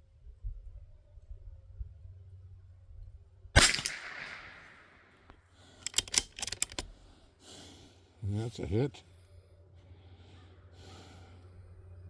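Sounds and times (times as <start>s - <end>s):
rifle gunshot: 3.6s - 5.2s
rifle bolt clicks: 3.6s - 7.0s.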